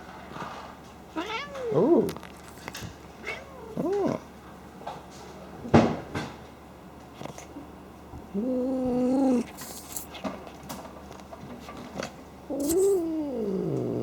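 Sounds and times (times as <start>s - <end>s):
cat low cry: 3.2s - 4.3s, 8.3s - 9.6s, 12.5s - 14.0s
cat snorting: 8.3s - 10.1s, 12.5s - 14.0s.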